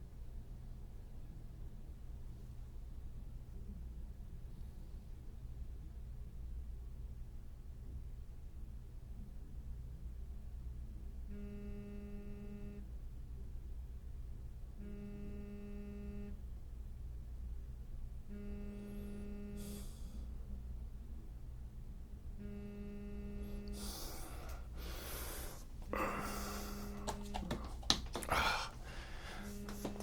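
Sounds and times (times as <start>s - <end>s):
phone buzzing: 11.3s - 12.8s, 14.8s - 16.4s, 18.3s - 20.0s, 22.4s - 28.2s, 29.0s - 30.0s
clicks: 26.9s - 28.3s.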